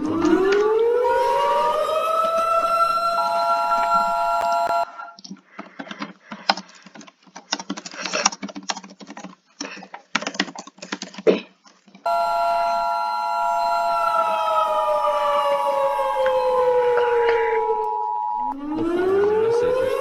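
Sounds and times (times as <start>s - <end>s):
multi-tone emergency alert signal: 0.0s - 5.2s, 12.1s - 20.0s
rapid irregular clicking and tapping: 5.2s - 12.1s.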